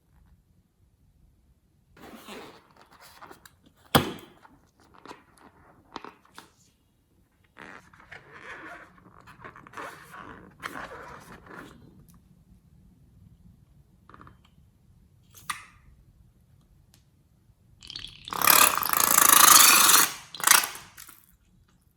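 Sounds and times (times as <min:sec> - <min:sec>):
sharp pop: 0:03.9 - 0:04.4.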